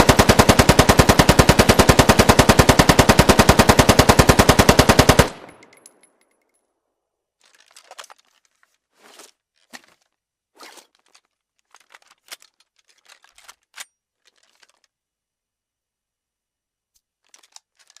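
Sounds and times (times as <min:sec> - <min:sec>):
short crackling and rustling: 0:07.4 - 0:15.0.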